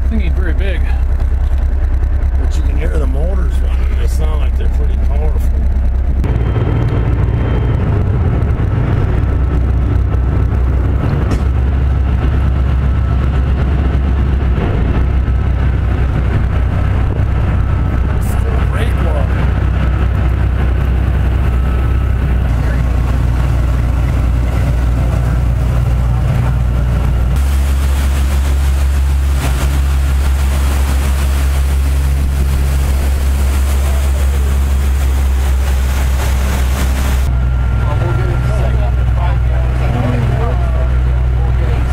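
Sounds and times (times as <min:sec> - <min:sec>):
vehicle engine rumbling: 0:00.0 - 0:41.9
wind or road rushing noise: 0:05.1 - 0:37.8.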